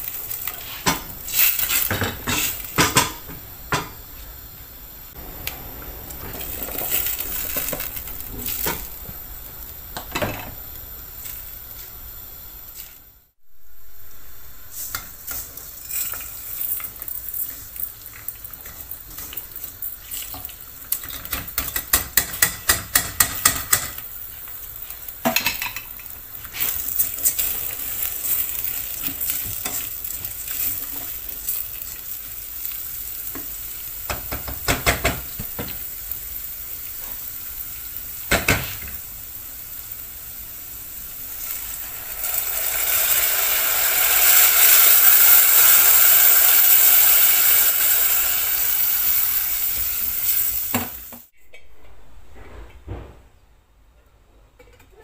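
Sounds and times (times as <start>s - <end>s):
food sizzling in a pan: 0.0s - 51.4s
sharp knocks: 51.6s - 53.4s.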